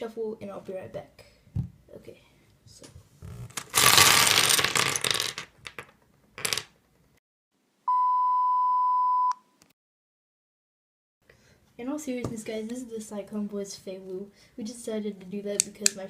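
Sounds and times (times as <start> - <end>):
censor bleep: 7.9 - 9.6.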